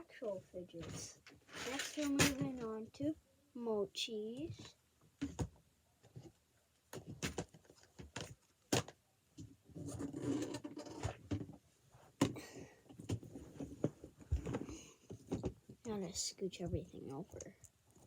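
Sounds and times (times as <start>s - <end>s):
rustling: 0.7s - 2.9s
toys knocking and clicking: 1.7s - 2.8s.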